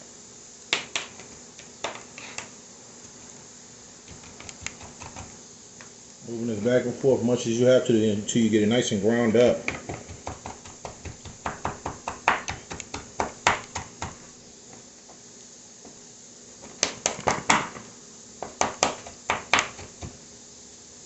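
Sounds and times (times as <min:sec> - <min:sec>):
knife chopping on cutting board: 0:09.6 - 0:14.2, 0:18.4 - 0:20.2.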